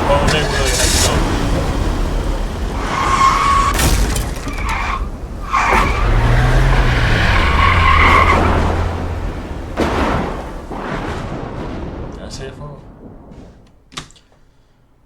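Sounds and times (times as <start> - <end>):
engine droning low: 0.0 - 11.1
car tyres squealing: 0.0 - 11.5.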